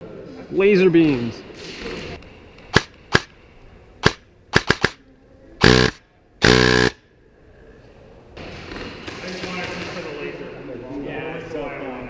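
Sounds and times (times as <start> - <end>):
airsoft guns firing: 2.7 - 3.3, 4.0 - 5.0, 5.6 - 7.0.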